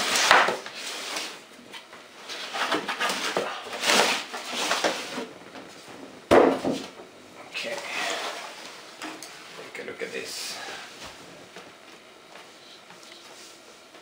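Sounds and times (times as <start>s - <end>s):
cardboard packaging rustling: 2.2s - 6.9s
loud knock: 6.3s - 6.8s.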